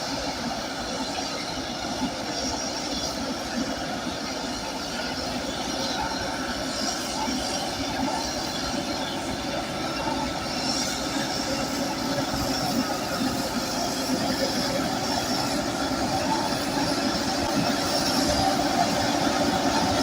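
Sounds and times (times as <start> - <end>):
crawler tracks squealing and clanking: 4.5 - 20.0.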